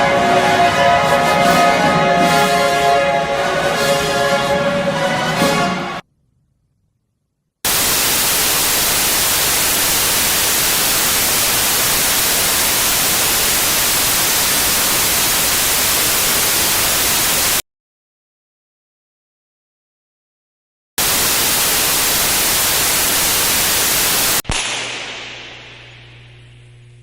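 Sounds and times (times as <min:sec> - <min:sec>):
white noise static: 0:07.7 - 0:17.6, 0:21.0 - 0:24.4, 0:25.0 - 0:27.0.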